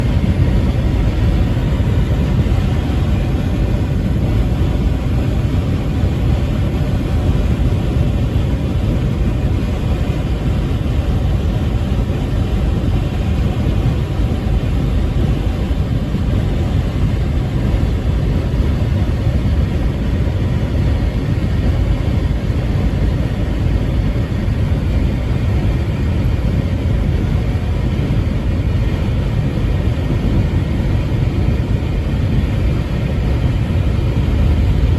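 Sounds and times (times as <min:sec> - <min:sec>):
truck engine and road noise: 0:00.0 - 0:34.9.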